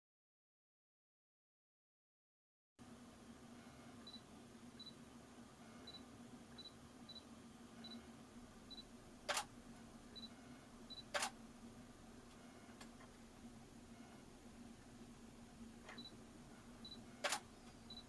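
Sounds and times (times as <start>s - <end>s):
faint steady hum: 2.8s - 18.0s
short sharp clicks: 9.3s - 9.5s, 17.2s - 17.5s.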